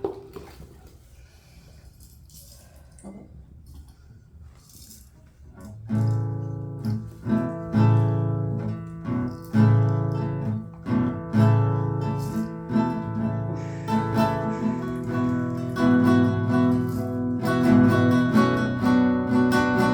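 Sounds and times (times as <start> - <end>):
acoustic guitar strumming: 5.9 - 19.9.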